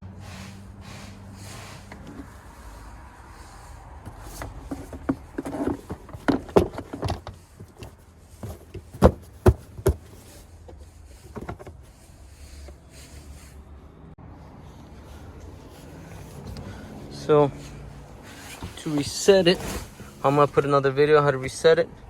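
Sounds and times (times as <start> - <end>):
hard objects clicking and knocking: 4.0 - 11.8.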